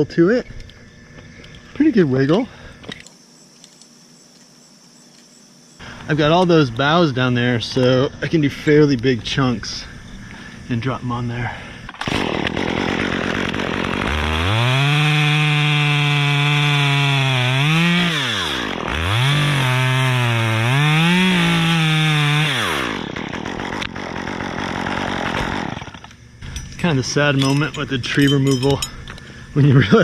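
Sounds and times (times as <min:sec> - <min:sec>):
chainsaw cutting wood: 0:11.9 - 0:26.5.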